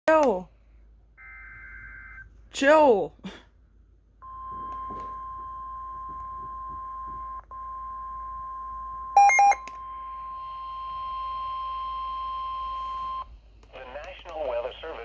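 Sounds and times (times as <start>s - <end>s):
steady high alarm tone: 9.1s - 13.2s
short loud high beeps: 9.2s - 9.6s
radio hiss: 13.7s - 15.0s.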